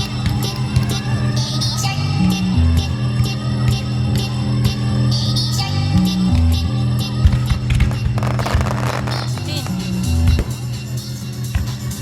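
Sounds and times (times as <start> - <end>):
sustained bass notes: 0.0 - 11.3
music with steady beat: 0.0 - 12.0.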